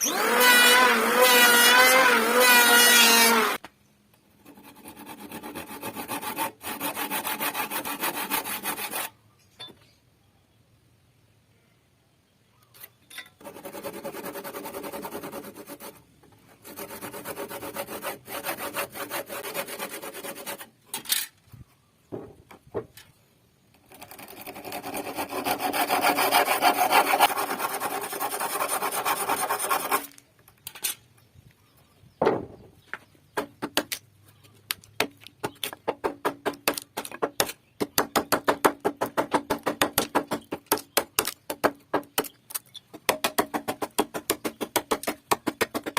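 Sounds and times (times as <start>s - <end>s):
saw cutting wood: 0.0s - 3.6s, 4.4s - 9.2s, 16.6s - 20.7s, 23.9s - 30.2s.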